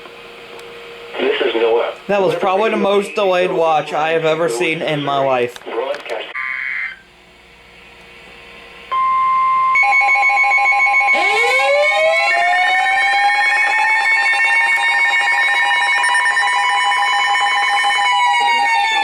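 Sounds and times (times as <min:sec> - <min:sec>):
siren wailing: 0:06.3 - 0:07.1, 0:09.8 - 0:19.0
rapidly pulsing electronic beeps: 0:09.8 - 0:19.0.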